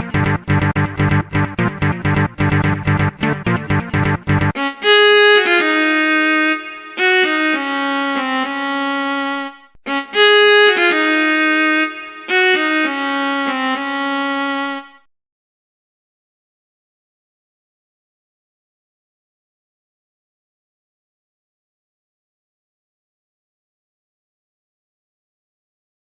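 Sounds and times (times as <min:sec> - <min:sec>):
background music melody: 0:00.0 - 0:15.1.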